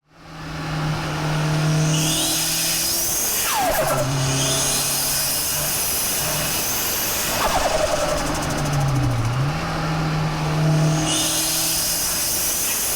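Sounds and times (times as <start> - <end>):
car engine droning: 3.5 - 12.9.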